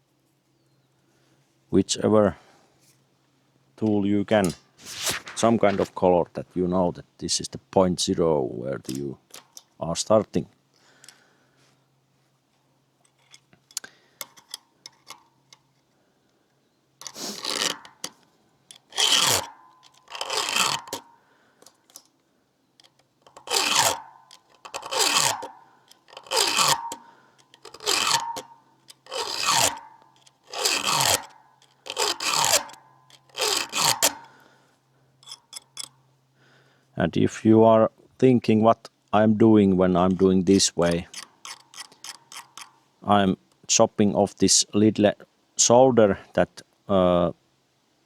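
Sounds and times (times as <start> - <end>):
file rasping on chainsaw chain: 17.0 - 21.2, 22.9 - 34.4, 35.2 - 35.9, 40.0 - 42.8.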